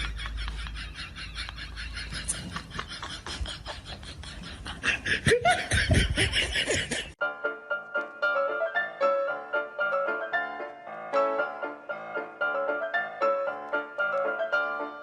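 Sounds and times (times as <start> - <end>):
piano music: 7.2 - 15.0.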